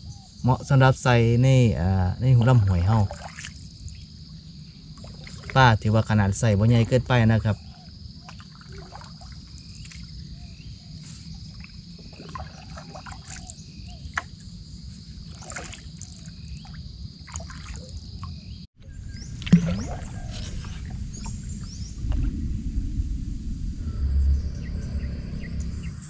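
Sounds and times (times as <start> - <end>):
low rumble of movement in water: 0.0 - 26.0
water sloshing: 2.2 - 22.4.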